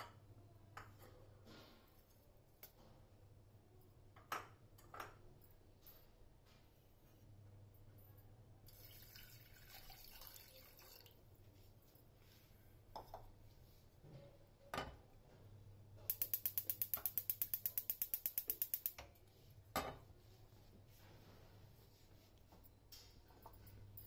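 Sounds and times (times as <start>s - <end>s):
gas stove igniter clicking: 16.1s - 19.0s.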